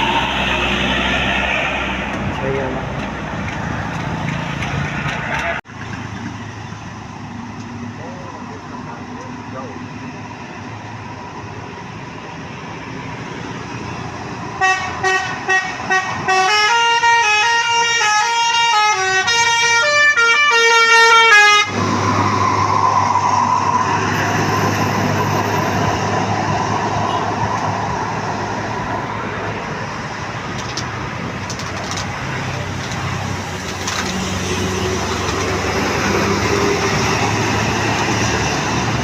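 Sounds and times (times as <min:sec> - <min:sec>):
bus engine: 0:00.0 - 0:39.0
road noise: 0:00.0 - 0:39.0
musical bus horn: 0:14.6 - 0:21.8.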